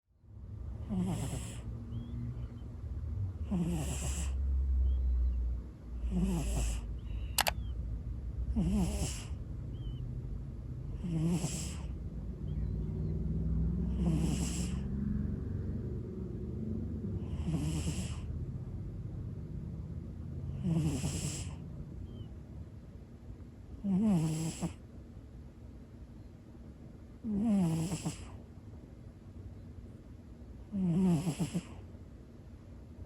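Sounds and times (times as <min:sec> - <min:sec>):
cat snoring: 0:00.8 - 0:02.1, 0:03.4 - 0:04.4, 0:06.0 - 0:07.0, 0:08.5 - 0:10.0, 0:10.9 - 0:15.3, 0:17.1 - 0:18.4, 0:20.5 - 0:22.2, 0:23.8 - 0:24.8, 0:27.2 - 0:28.4, 0:30.7 - 0:31.8
sharp click: 0:07.4 - 0:07.6.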